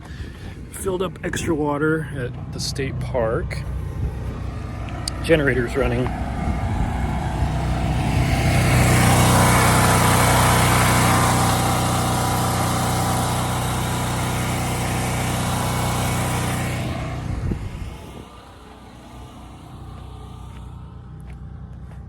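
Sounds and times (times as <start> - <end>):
generator humming: 0.0 - 22.0
loud rushing noise: 3.6 - 20.7.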